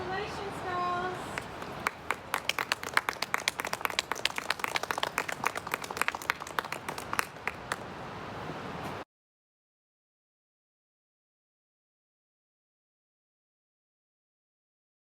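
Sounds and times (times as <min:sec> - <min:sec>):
people clapping: 0:01.3 - 0:07.9.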